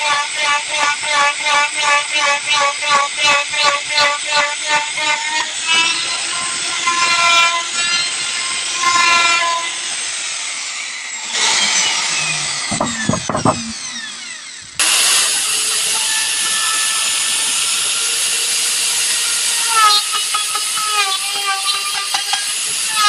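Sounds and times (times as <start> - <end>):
wood router whining: 0.0 - 23.0
low knocks: 12.6 - 14.0.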